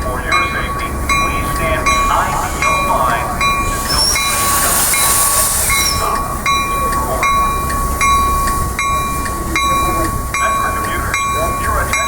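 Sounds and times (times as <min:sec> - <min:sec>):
train wheels clacking: 0:00.0 - 0:12.0
train whine: 0:00.0 - 0:12.0
hiss: 0:01.4 - 0:06.7.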